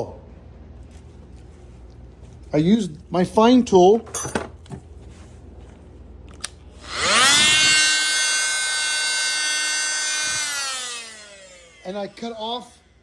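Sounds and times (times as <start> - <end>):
oscillating multi-tool whine: 6.8 - 13.0.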